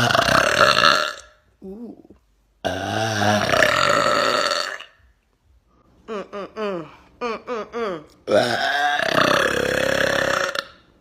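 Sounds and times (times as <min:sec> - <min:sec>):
woman burping: 0:06.1 - 0:10.8.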